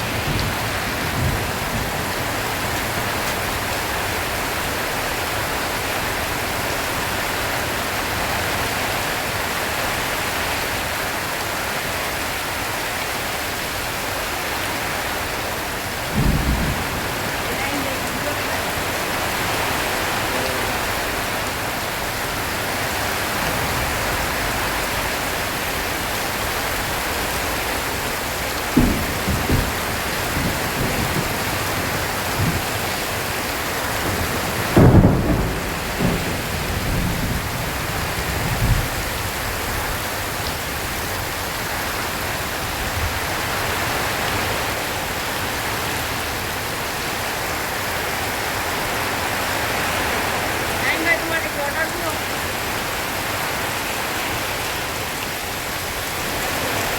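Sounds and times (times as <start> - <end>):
thunder rumbles: 0.0 - 8.6, 14.5 - 43.4
heavy rain on a tin roof: 0.0 - 56.9.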